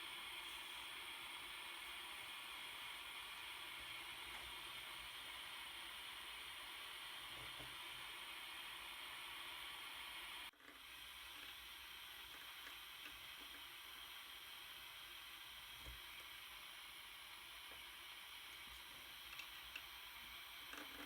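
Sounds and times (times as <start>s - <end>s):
soldering iron hiss: 0.0s - 21.0s.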